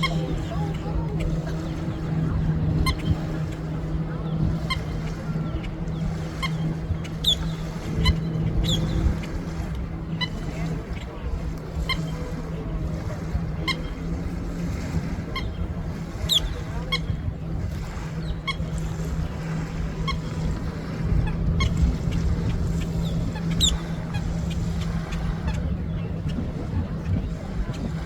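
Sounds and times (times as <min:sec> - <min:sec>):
birds calling: 0:00.0 - 0:12.7, 0:13.4 - 0:17.2, 0:17.8 - 0:27.9
steady low hum: 0:00.0 - 0:28.0
higher sweeping bird calls: 0:04.6 - 0:09.0.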